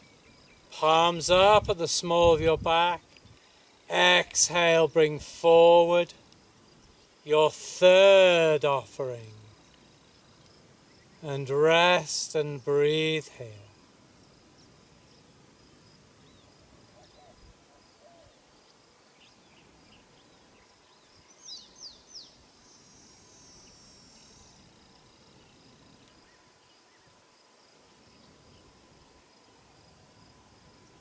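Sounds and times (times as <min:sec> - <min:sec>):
high insect drone: 0:08.2 - 0:31.0
bird chirps: 0:19.2 - 0:24.6.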